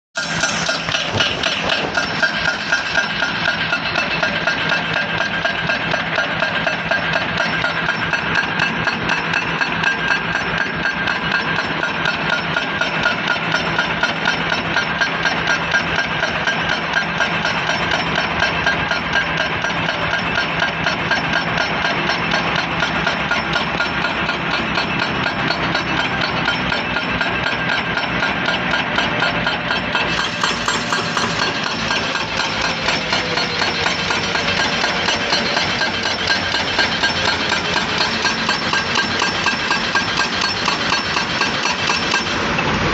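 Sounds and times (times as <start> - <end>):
high whine: 0.2 - 5.6, 30.0 - 37.0
fast even clatter: 0.2 - 9.7
excavator machine noise: 0.2 - 42.9.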